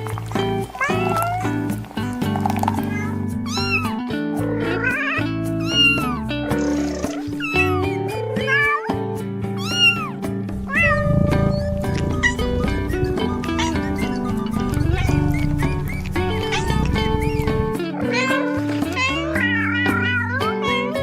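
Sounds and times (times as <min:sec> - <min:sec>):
background music: 0:00.0 - 0:21.0
cat meowing: 0:00.8 - 0:01.6, 0:02.8 - 0:09.0, 0:09.6 - 0:21.0.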